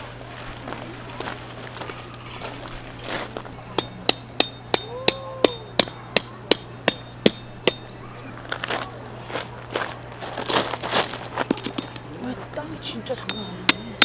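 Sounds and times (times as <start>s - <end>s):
hammer striking metal tent peg: 3.8s - 7.9s, 13.3s - 14.0s.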